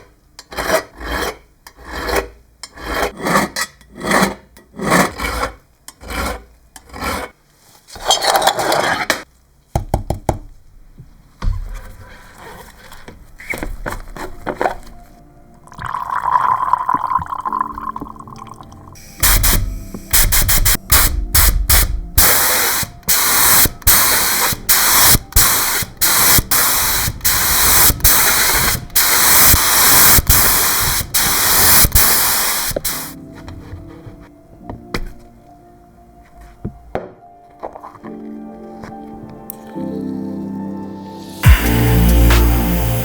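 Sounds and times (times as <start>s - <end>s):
pressurised spray hissing: 19.0s - 33.2s, 41.2s - 43.0s.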